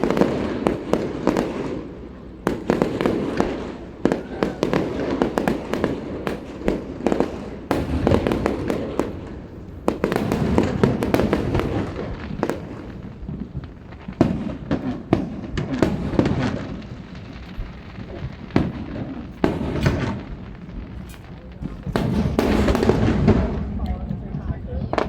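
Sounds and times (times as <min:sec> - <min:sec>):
fireworks bangs: 0:00.0 - 0:25.0
fireworks crackling: 0:00.0 - 0:25.0.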